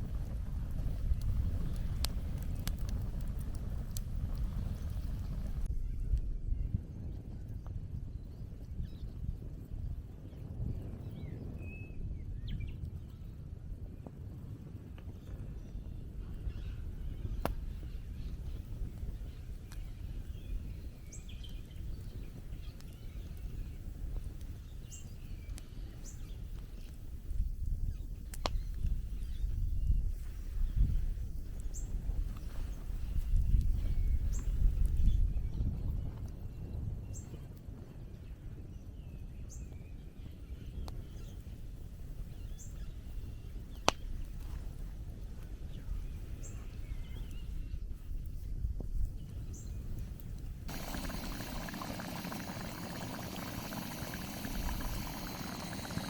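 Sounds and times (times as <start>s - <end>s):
faint bird chirps: 50.7s - 56.0s
steady low rumble: 50.7s - 56.0s.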